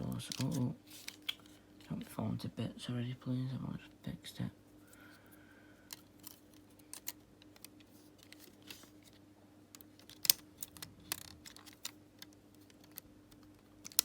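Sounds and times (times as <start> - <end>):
faint steady hum: 0.0 - 14.0
plastic parts clicking: 5.9 - 14.0.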